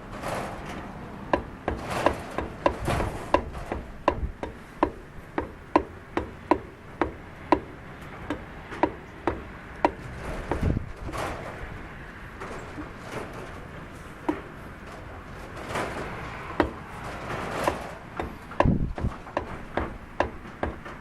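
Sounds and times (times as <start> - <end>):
rhythmic vehicle knocking: 1.3 - 10.9, 17.6 - 21.0.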